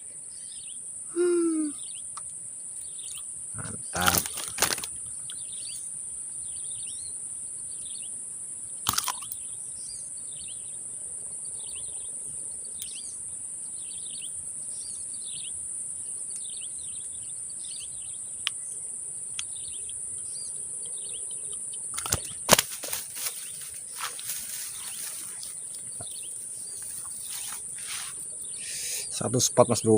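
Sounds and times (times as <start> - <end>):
insects droning: 0.0 - 29.9
bird chirping: 0.2 - 2.2, 2.8 - 29.9.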